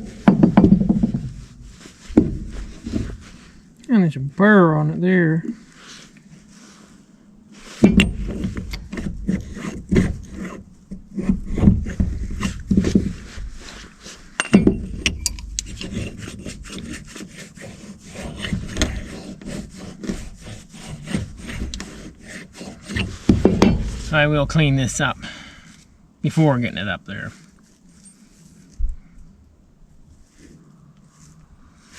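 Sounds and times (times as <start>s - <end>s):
file scraping metal: 7.8s - 12.9s, 14.7s - 25.2s.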